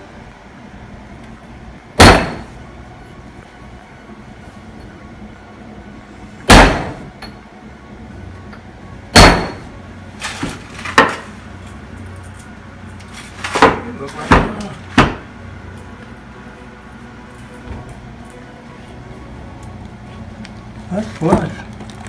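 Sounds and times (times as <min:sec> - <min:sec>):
sharp loud knocks: 0:02.0 - 0:02.5, 0:06.5 - 0:07.0, 0:09.2 - 0:09.7.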